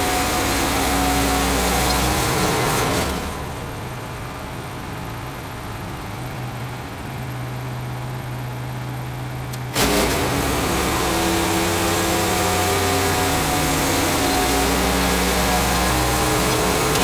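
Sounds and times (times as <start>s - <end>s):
gasoline engine revving: 0.0s - 4.3s, 9.5s - 17.0s
band blade running: 9.8s - 17.0s.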